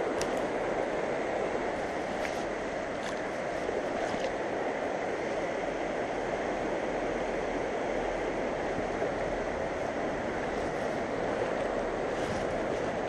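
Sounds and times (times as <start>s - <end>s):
fast river rushing: 0.0s - 13.0s.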